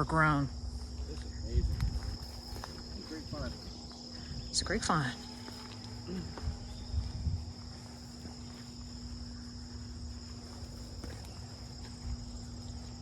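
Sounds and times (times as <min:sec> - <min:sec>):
constant low hum: 0:00.0 - 0:13.0
insects chirping: 0:00.0 - 0:13.0.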